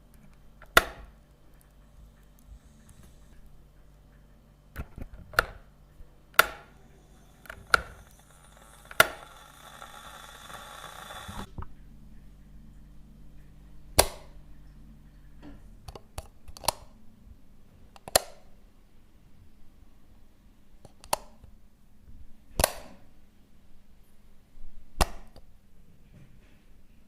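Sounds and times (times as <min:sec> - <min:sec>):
switches clicking: 0:06.3 - 0:11.6.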